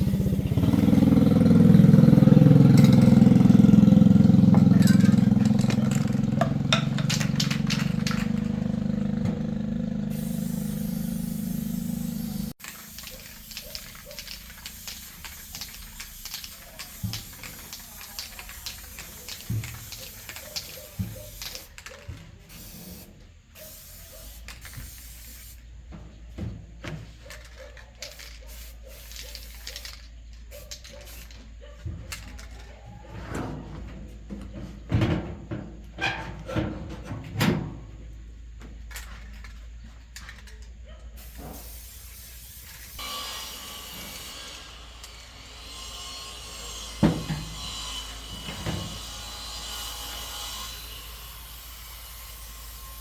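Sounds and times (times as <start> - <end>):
tool clicks and knocks: 4.5 - 8.6.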